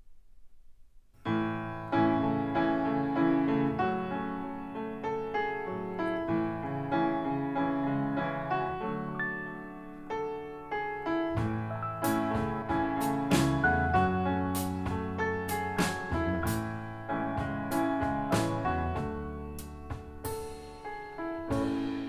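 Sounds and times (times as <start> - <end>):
solo piano over loudspeakers: 1.2 - 22.0.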